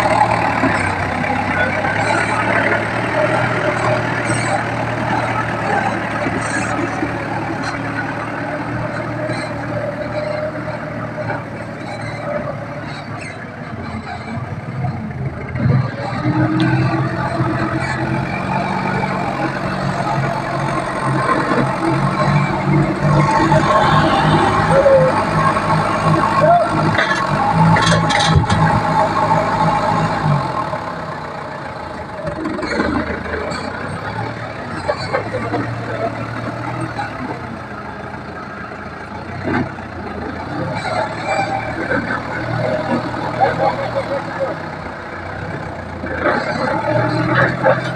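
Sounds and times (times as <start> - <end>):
heavy machine engine running: 0.0 - 47.9
clanks: 15.3 - 30.0.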